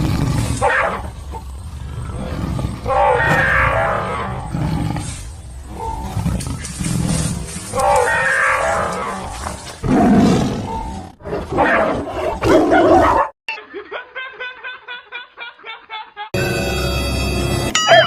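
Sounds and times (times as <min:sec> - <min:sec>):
drawn-out animal roars: 0:00.0 - 0:11.0.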